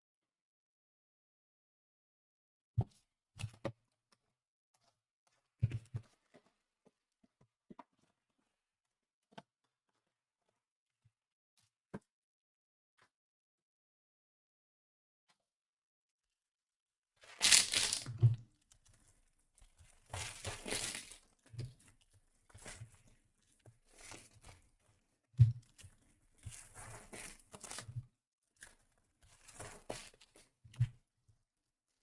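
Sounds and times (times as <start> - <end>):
card pack wrappers tearing and crinkling: 17.3 - 18.1, 20.2 - 21.2.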